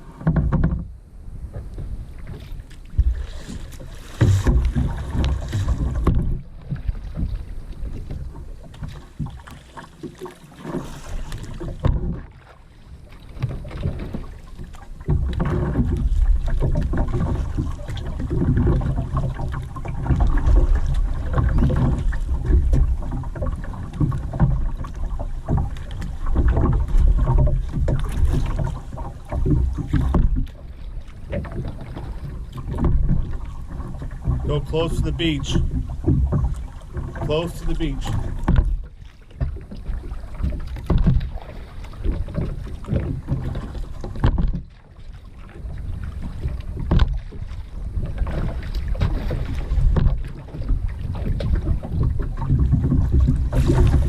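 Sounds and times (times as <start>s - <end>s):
wind rumble on microphone: 0.0s - 9.5s, 13.0s - 54.0s
paddle splashing in water: 0.0s - 54.0s.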